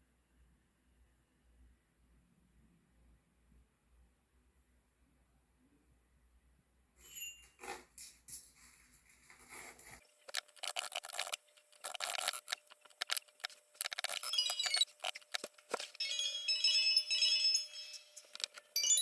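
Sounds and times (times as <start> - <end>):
bell-like music: 7.0 - 7.6, 16.0 - 19.0
small hard objects clinking: 10.1 - 19.0.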